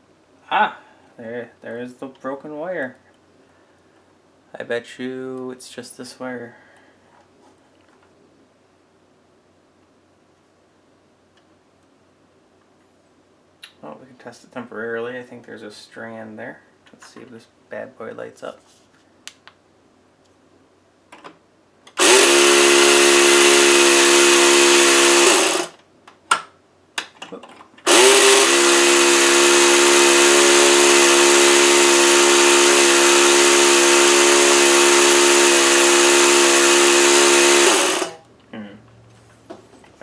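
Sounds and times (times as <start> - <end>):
small electric motor humming: 22.0 - 25.7, 27.9 - 38.2.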